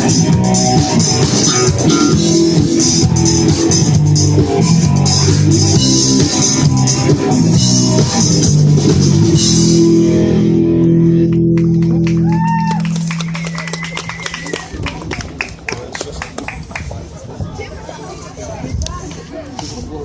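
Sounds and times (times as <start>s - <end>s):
drums and cymbals: 0.0s - 10.0s
electric guitar: 0.0s - 14.4s
bass guitar: 0.0s - 15.2s.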